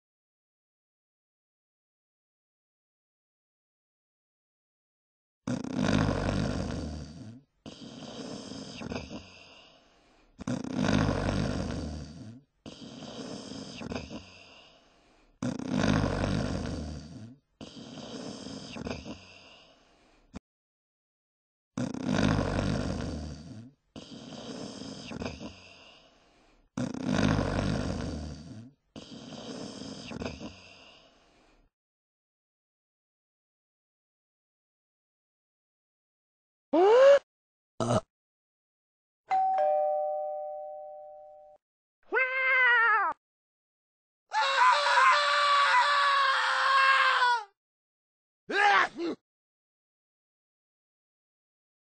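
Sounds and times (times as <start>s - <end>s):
loud snoring: 5.5s - 19.9s, 21.8s - 31.4s
quiet breath: 7.2s - 10.4s, 12.1s - 15.4s, 17.1s - 20.4s, 23.6s - 26.7s, 28.6s - 31.7s.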